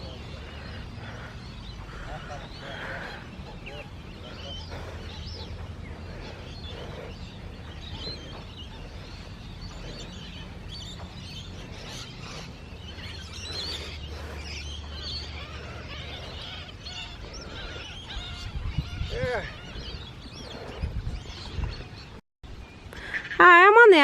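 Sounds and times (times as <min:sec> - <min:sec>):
birds calling and chirping: 0:00.0 - 0:24.0
wind rumble on microphone: 0:16.7 - 0:23.1.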